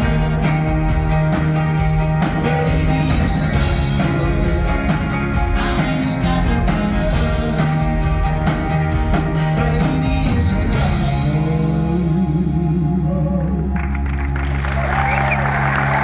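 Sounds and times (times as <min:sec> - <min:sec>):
guitars over drum beat: 0:00.0 - 0:12.6
folk-rock band playing live: 0:00.0 - 0:16.0.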